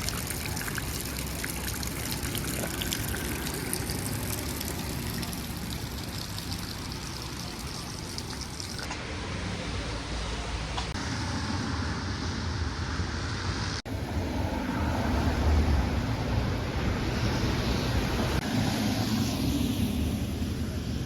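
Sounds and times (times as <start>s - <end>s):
water trickling: 0.0s - 8.9s.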